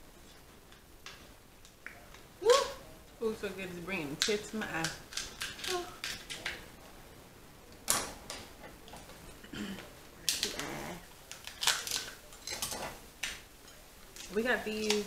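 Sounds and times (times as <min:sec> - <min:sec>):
shells cracking: 0:04.2 - 0:06.6, 0:10.3 - 0:10.7, 0:11.3 - 0:12.6.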